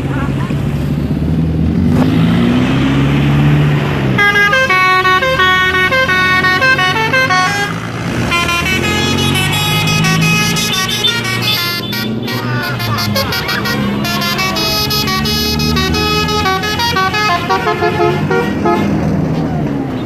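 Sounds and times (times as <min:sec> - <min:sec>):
bus engine running: 0:00.0 - 0:20.0
musical bus horns playing tune: 0:04.0 - 0:19.1.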